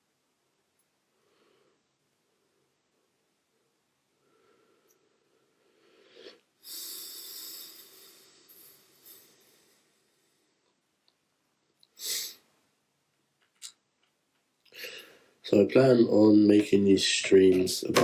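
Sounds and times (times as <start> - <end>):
person breathing: 1.1 - 2.8, 4.1 - 10.7, 12.0 - 12.5, 14.7 - 15.4.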